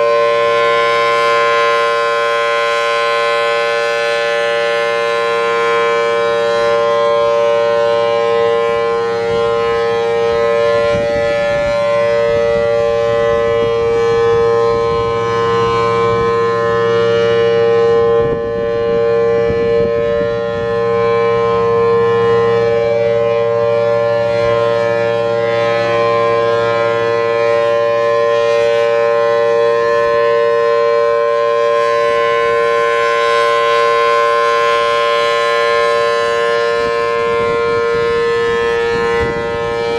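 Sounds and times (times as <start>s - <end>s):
mechanical siren steady tone: 0.0s - 39.9s.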